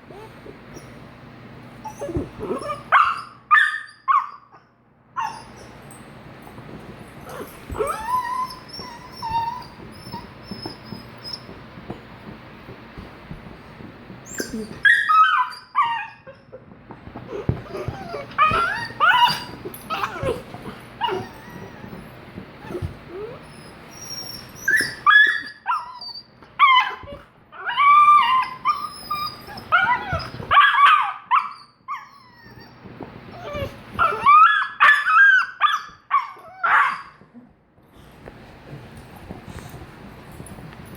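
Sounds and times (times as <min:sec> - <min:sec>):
puppy yipping and whining: 0:00.1 - 0:01.0, 0:01.8 - 0:06.0, 0:07.2 - 0:11.6, 0:14.2 - 0:16.6, 0:17.2 - 0:37.3
scuffling: 0:05.6 - 0:15.0.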